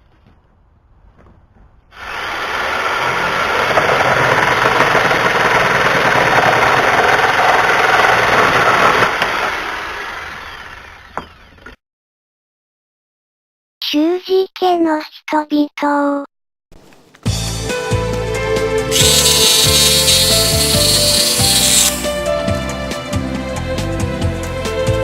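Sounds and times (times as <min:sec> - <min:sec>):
chainsaw cutting wood: 0:02.0 - 0:11.6, 0:18.9 - 0:22.2.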